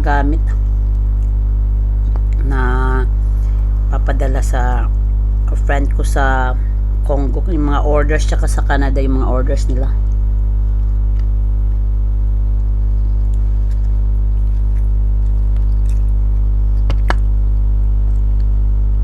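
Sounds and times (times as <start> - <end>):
electrical mains hum: 0.0 - 19.0
wet mouth eating sounds: 12.6 - 17.3.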